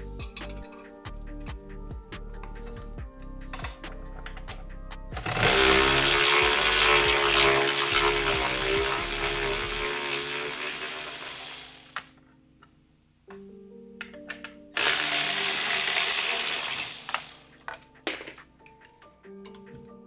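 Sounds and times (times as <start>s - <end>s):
power tool whining: 5.2s - 12.1s, 14.8s - 17.6s.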